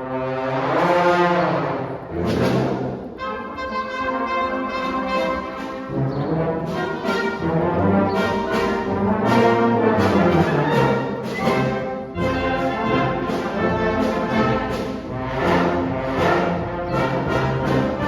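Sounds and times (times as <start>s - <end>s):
trombone slide: 0.0s - 18.0s
concert band playing: 0.6s - 18.0s.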